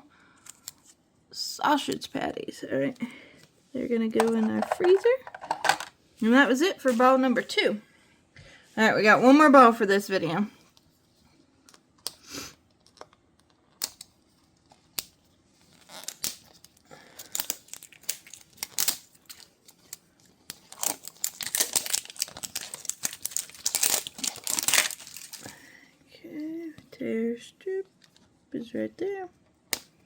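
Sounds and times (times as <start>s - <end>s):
plastic wrap crinkling and tearing: 12.7s - 25.7s.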